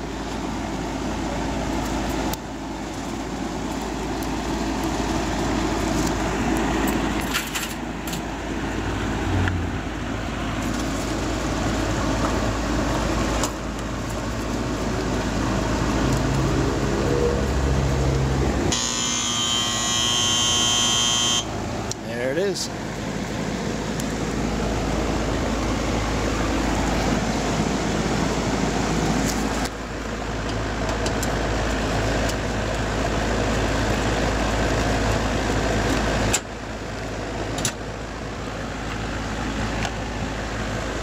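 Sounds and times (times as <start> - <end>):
fan cage rattling: 1.3 - 8.7
loud electrical buzz: 18.6 - 21.6
air conditioner unit humming: 18.6 - 41.0.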